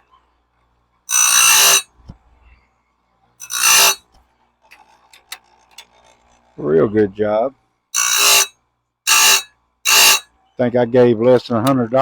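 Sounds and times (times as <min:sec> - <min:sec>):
high-pitched metallic grinding: 0:01.1 - 0:01.9, 0:03.4 - 0:04.0, 0:08.0 - 0:08.5, 0:09.1 - 0:10.3.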